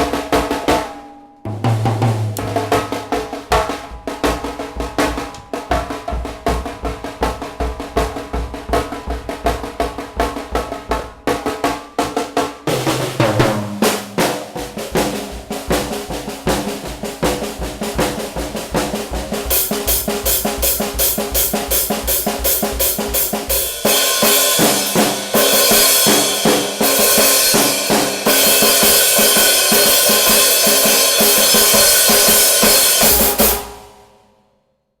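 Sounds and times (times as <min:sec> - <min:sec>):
drum kit played fast: 0:00.0 - 0:33.9
cymbals washing: 0:12.7 - 0:33.7.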